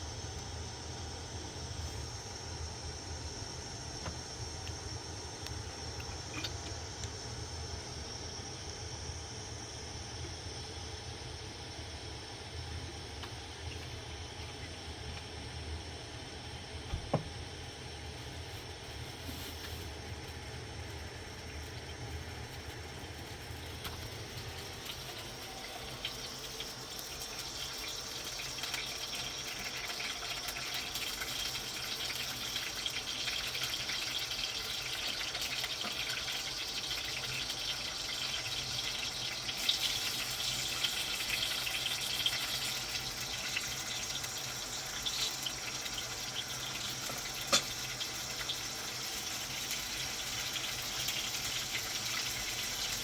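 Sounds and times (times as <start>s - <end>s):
water running: 19.0s - 53.0s.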